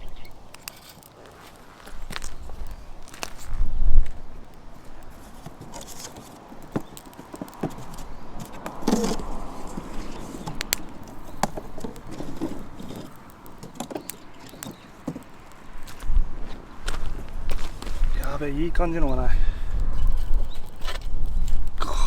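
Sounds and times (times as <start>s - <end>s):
small sticks cracking: 0.0s - 18.8s, 19.7s - 22.0s
footsteps crunching through dry leaves: 0.8s - 6.9s, 15.6s - 18.4s.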